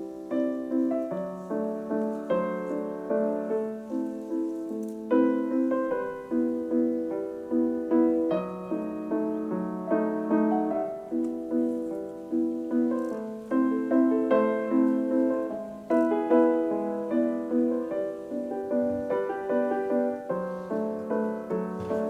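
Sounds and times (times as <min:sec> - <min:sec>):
gentle solo piano: 0:00.0 - 0:22.0.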